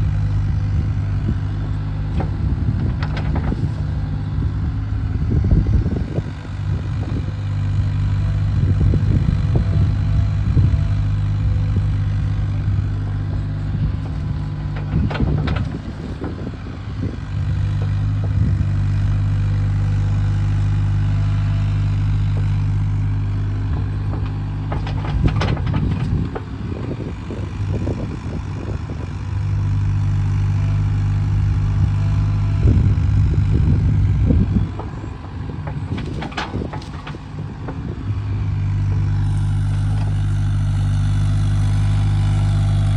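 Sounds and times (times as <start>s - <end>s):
excavator diesel engine running: 0.0s - 42.9s
metal knocks: 14.0s - 16.4s, 23.7s - 26.6s, 34.6s - 37.9s.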